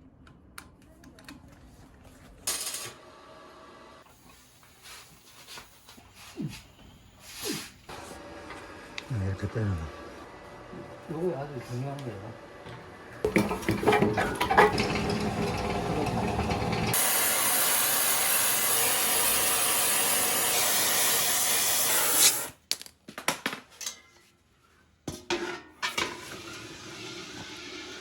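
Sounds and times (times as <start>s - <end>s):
mechanical clatter and rumble: 13.2s - 17.0s.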